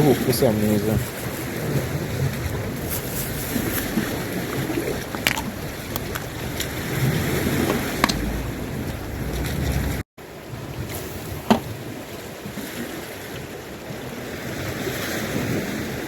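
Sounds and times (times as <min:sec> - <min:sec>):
sea water washing on shore: 0:00.0 - 0:16.0
wind buffeting microphone: 0:00.0 - 0:16.0.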